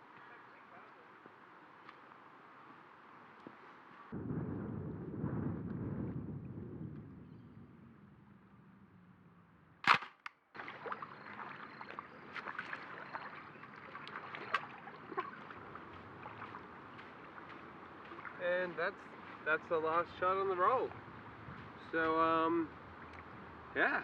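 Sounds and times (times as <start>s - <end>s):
outdoor background noise: 0.0s - 24.0s
camera shutter click: 9.8s - 10.3s.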